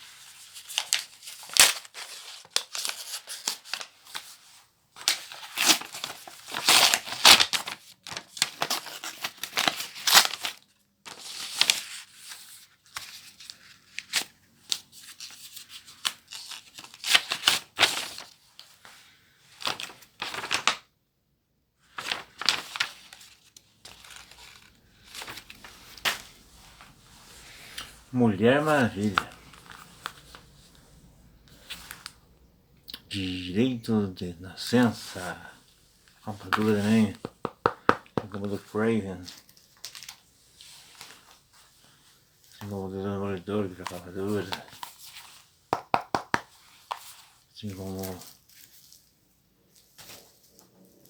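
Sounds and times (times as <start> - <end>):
paper packaging tearing and crinkling: 0.4 - 4.3, 5.0 - 18.4, 19.6 - 20.8, 21.9 - 30.6, 36.3 - 40.2, 43.6 - 45.3.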